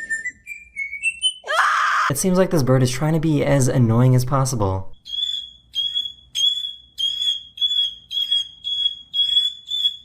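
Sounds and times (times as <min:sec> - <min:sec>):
bird calling high-pitched note: 0:05.0 - 0:10.0.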